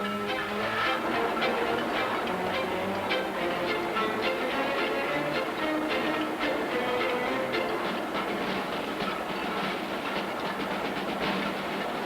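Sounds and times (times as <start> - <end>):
bowed strings holding notes: 0.0 - 8.9.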